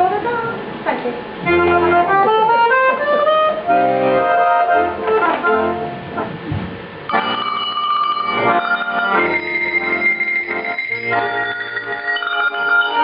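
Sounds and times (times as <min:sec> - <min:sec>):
accordion: 0:01.4 - 0:06.4, 0:07.1 - 0:13.0
tuned cow bells playing tune: 0:07.1 - 0:13.0.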